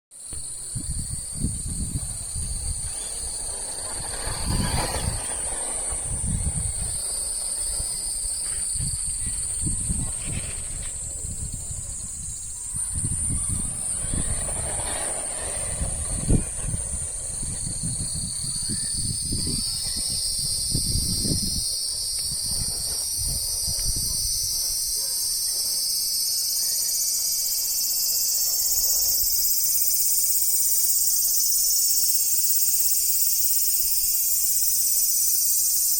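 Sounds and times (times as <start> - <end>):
cicadas buzzing: 0.2 - 35.9
brief rushing swell: 2.0 - 25.4.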